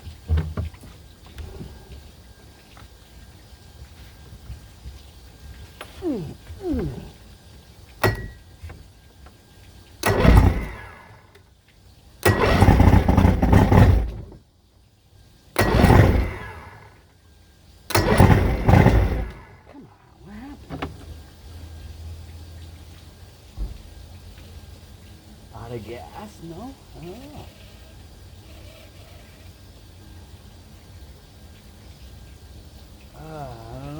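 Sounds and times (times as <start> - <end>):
boat motor starting and dying: 0.0 - 3.4, 4.0 - 11.5, 12.2 - 14.5, 15.5 - 17.2, 17.8 - 22.6, 25.5 - 30.0, 33.0 - 33.9.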